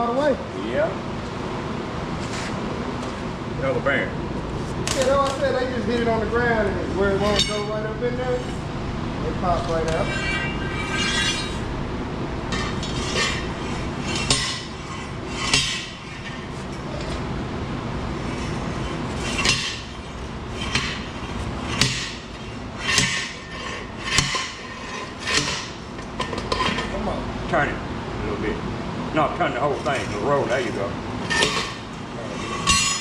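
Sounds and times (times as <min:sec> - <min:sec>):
hammer striking steel: 0:07.2 - 0:07.8, 0:09.9 - 0:11.6, 0:12.5 - 0:16.4, 0:19.2 - 0:20.0, 0:20.6 - 0:21.1, 0:21.7 - 0:25.8, 0:31.3 - 0:33.0.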